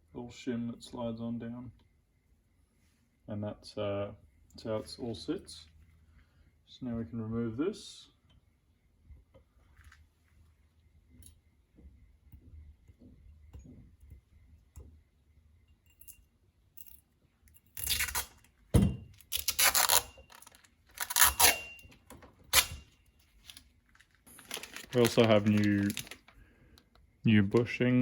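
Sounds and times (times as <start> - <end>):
tape tearing off: 19.3 - 21.7, 22.5 - 26.3
faint handling: 19.8 - 27.9.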